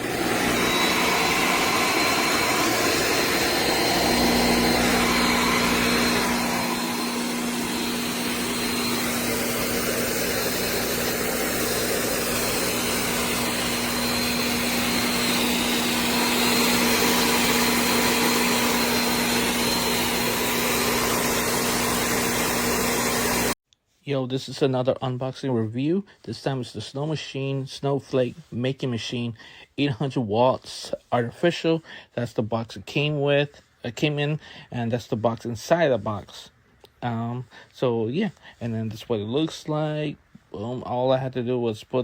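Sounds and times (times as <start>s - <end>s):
blower motor high whine: 0.0s - 23.6s.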